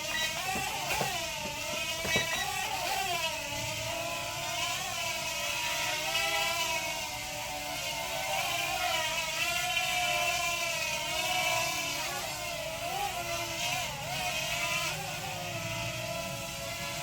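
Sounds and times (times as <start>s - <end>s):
drone propellers whining: 0.0s - 4.9s.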